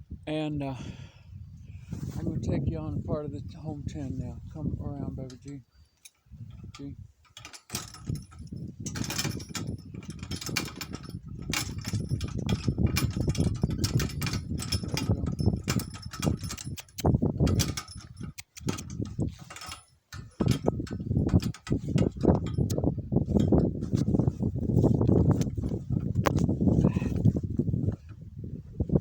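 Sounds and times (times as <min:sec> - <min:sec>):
handling knocks and rubbing: 0:03.7 - 0:28.3
metal gear jangling: 0:05.2 - 0:27.0.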